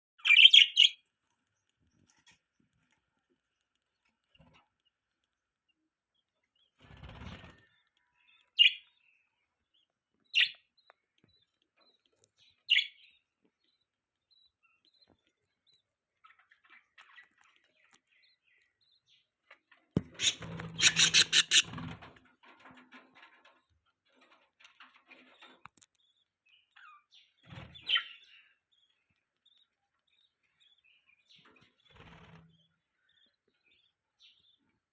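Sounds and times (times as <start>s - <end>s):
budgerigars chirping: 0.2s - 1.0s, 8.2s - 9.1s, 9.7s - 19.2s, 20.1s - 22.0s
rapid chattering bird calls: 20.1s - 22.2s.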